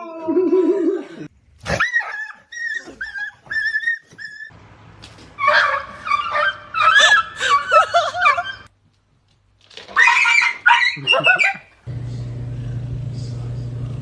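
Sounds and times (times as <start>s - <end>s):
dog whining: 1.7s - 4.5s, 5.4s - 8.7s.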